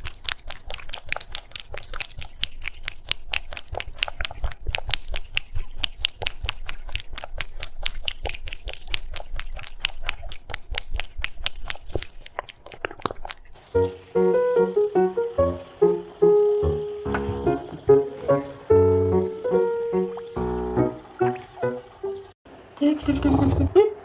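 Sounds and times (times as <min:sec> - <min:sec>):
animal crunching and chewing food: 0:00.0 - 0:14.2.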